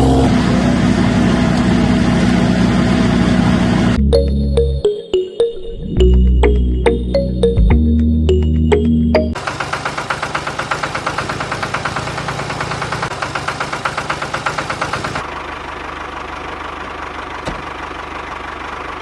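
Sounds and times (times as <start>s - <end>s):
small machine knocking rapidly: 9.4s - 15.2s.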